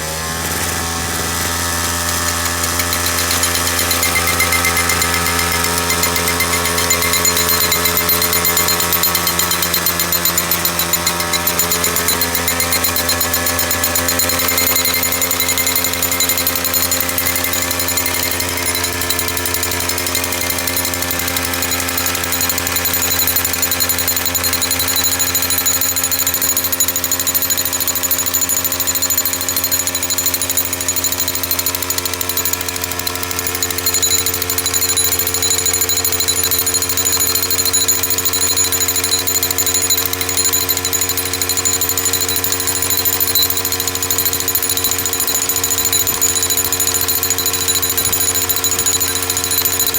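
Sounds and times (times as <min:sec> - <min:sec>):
jackhammer pounding: 0:00.3 - 0:49.9.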